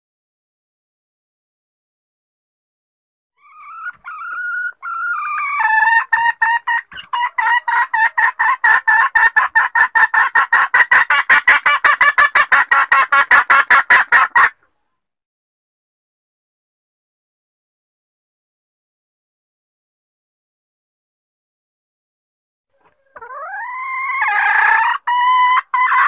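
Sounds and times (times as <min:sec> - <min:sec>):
hen calling: 0:03.4 - 0:14.5
rapid hen clucks: 0:03.4 - 0:14.8, 0:22.7 - 0:26.0.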